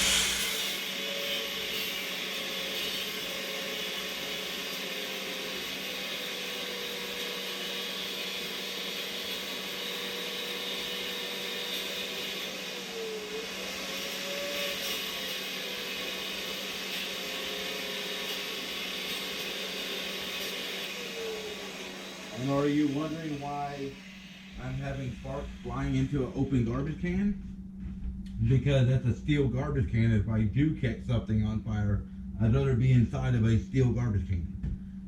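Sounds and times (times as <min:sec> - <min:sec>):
angle grinder grinding steel: 0:00.0 - 0:03.0, 0:06.2 - 0:26.3.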